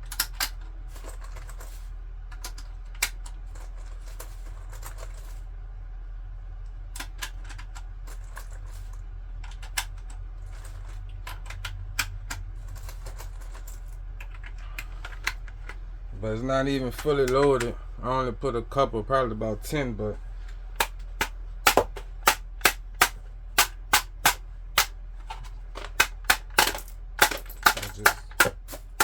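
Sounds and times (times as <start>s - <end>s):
steady low hum: 0.0s - 29.0s
cartridges clicking into magazine: 20.8s - 29.0s.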